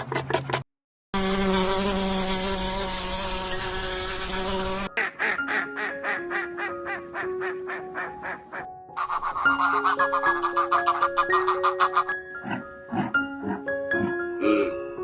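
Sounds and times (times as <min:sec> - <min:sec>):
steady insect-like buzzing: 0:01.2 - 0:04.9
music: 0:02.6 - 0:15.0.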